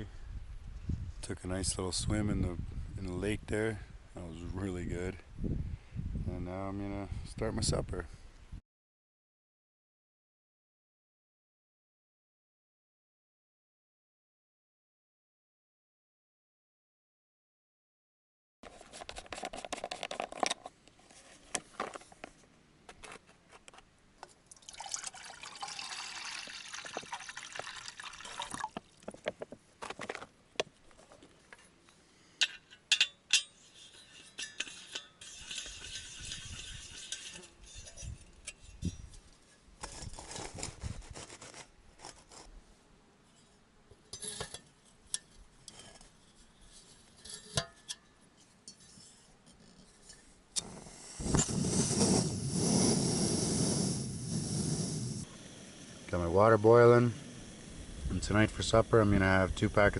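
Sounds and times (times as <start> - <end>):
water pouring into a pot: 24.5 - 29.0
metal pot and lid clinking: 32.4 - 39.0, 44.0 - 46.1, 47.2 - 48.1.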